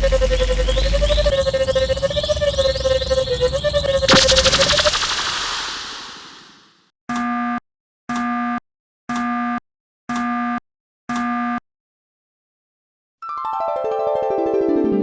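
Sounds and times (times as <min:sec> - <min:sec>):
electronic beeps: 0:04.1 - 0:06.6
noisy crash: 0:04.1 - 0:06.6.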